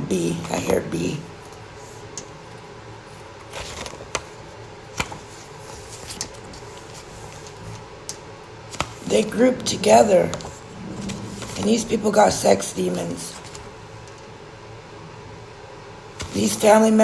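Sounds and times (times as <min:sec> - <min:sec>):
low hum: 0:09.0 - 0:15.6.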